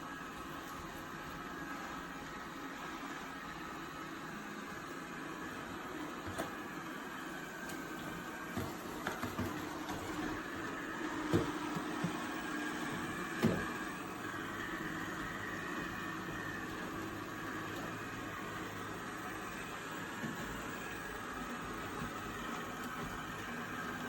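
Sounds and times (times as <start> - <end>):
robot vacuum motor hum: 0.1 - 24.0.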